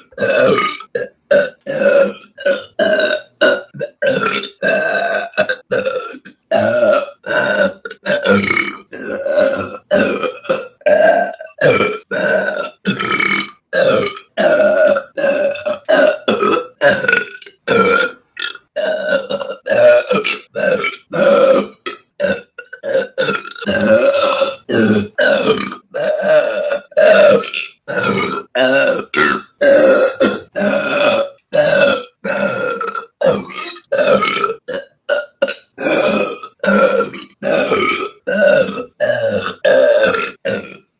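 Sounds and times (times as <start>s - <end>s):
woman burping loudly: 0.0s - 40.9s.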